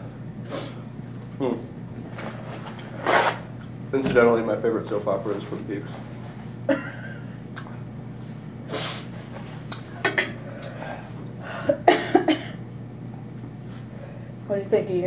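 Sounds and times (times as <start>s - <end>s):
person coughing: 11.6s - 12.6s.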